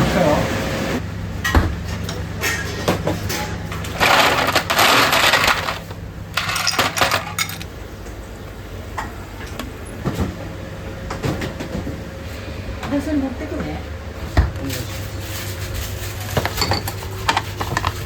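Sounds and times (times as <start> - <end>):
steady low hum: 0.0 - 18.0
dishes and utensils clinking: 1.5 - 7.7, 16.3 - 18.0.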